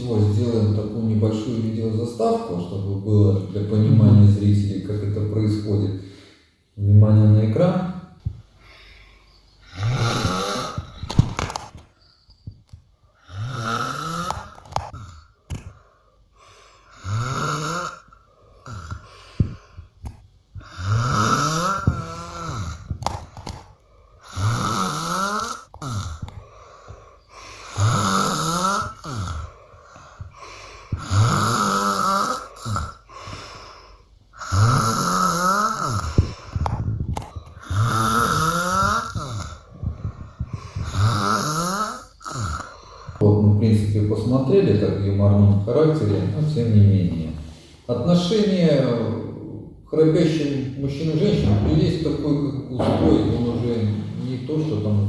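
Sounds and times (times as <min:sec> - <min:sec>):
quiet breaths: 0:00.0 - 0:06.9, 0:08.0 - 0:43.4
person snoring: 0:09.6 - 0:11.2, 0:13.2 - 0:15.4, 0:16.4 - 0:19.9, 0:20.6 - 0:43.3.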